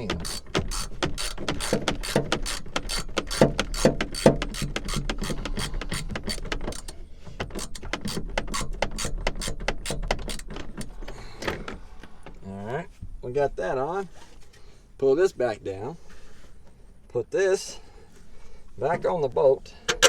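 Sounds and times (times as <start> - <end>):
ratchet clicking: 0.0 - 10.5.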